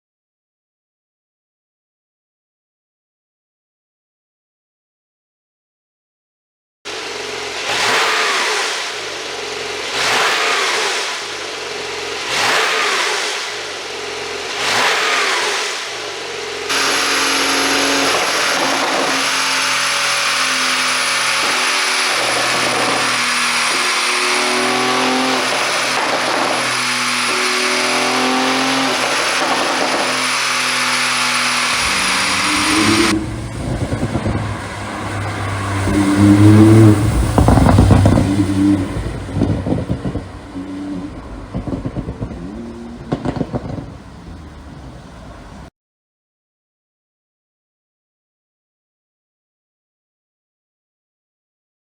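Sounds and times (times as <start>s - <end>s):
car engine revving: 6.9s - 45.7s
car engine running under way: 6.9s - 45.7s.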